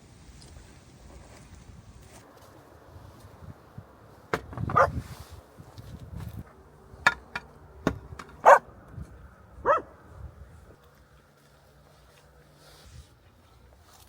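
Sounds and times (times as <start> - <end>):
dog barking: 4.8 - 5.0, 8.4 - 8.6, 9.6 - 9.9.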